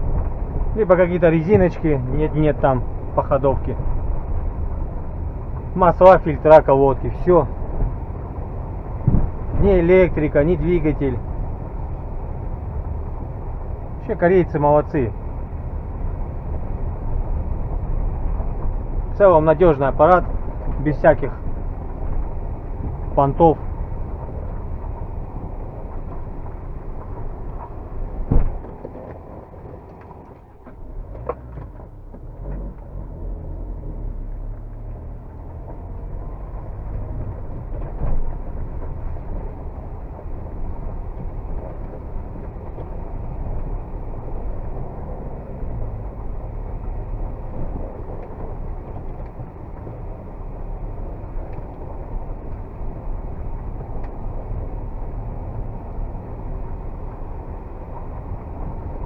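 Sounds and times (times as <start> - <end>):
car engine and road noise: 0.0 - 59.0
thump: 9.0 - 9.4, 28.2 - 28.8.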